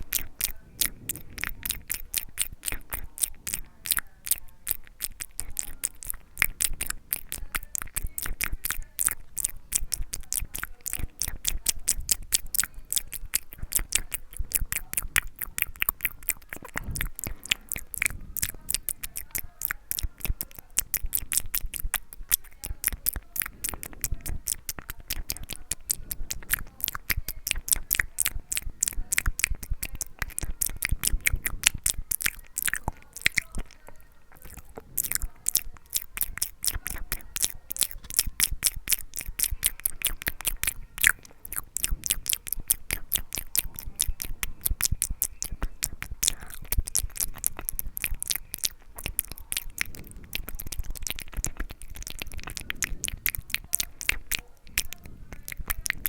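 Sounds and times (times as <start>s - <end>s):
lip and tongue clicks: 0.0s - 56.0s.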